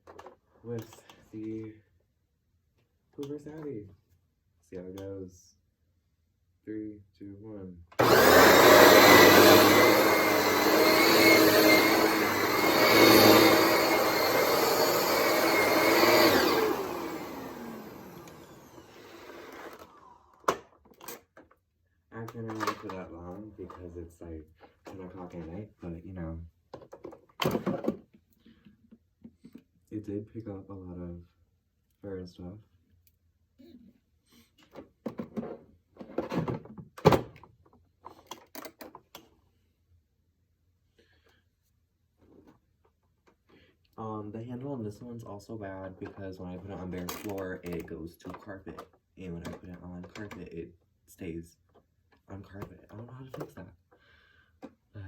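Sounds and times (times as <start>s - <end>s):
vacuum cleaner running on carpet: 8.0s - 20.0s
vacuum motor winding down: 8.0s - 20.4s.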